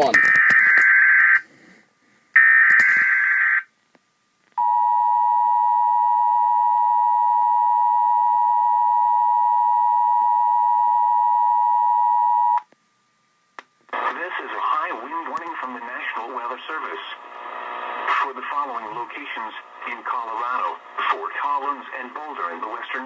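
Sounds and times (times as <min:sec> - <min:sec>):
data burst tones: 0:00.0 - 0:01.4.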